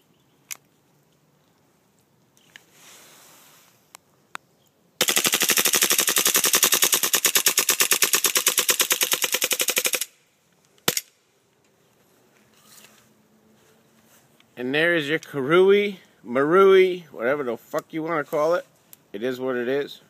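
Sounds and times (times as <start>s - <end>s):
airsoft pistol full-auto burst: 5.0s - 10.2s.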